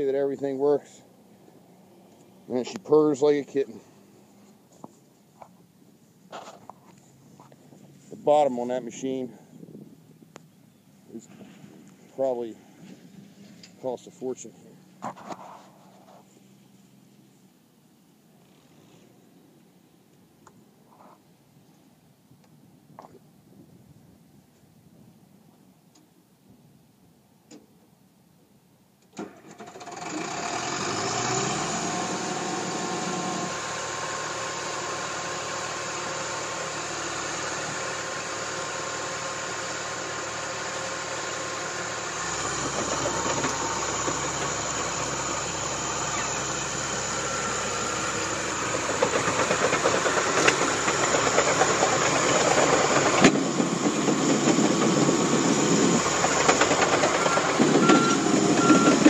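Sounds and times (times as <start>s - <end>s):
diesel engine starting up: 29.1s - 59.0s.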